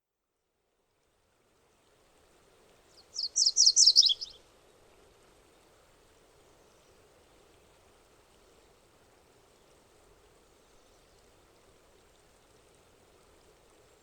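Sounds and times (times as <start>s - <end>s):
faint steady background noise: 0.0s - 14.0s
warbler singing: 3.0s - 4.4s.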